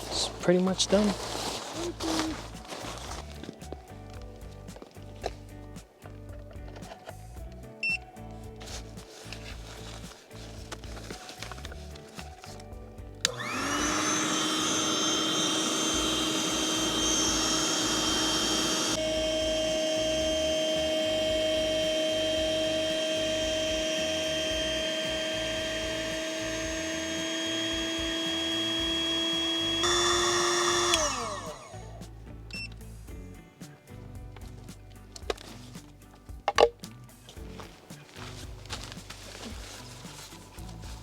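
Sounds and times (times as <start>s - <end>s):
electric blower motor whining: 13.2s - 32.1s.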